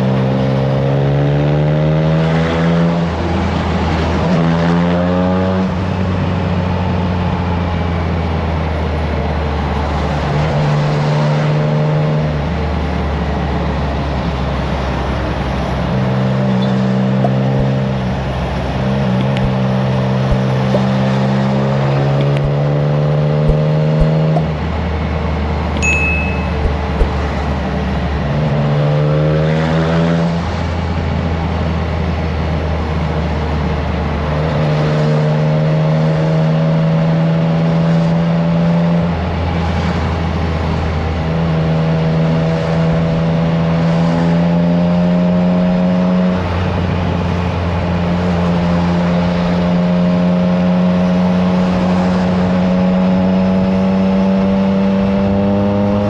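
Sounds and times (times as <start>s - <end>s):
motorcycle engine revving: 15.7s - 24.8s.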